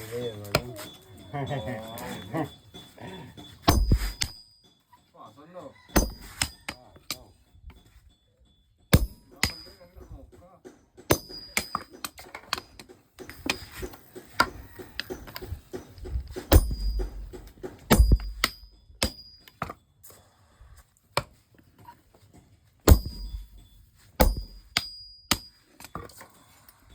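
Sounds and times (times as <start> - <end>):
hammer striking metal on anvil: 3.6 - 4.5, 5.9 - 7.2, 8.9 - 10.2, 11.0 - 12.6, 13.2 - 19.7, 22.9 - 25.5.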